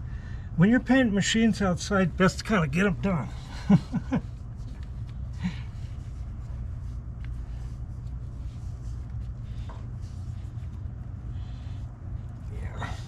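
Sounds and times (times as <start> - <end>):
steady low hum: 0.0 - 13.0
paintbrush scratching on metal: 5.8 - 13.0.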